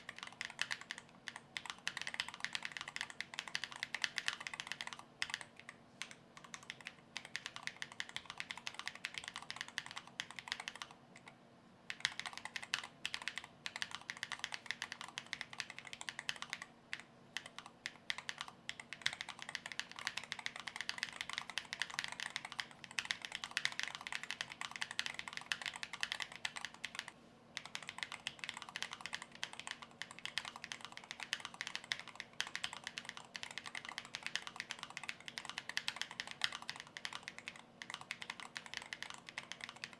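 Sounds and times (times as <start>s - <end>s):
mechanical keyboard typing: 0.0s - 11.3s, 11.9s - 39.9s.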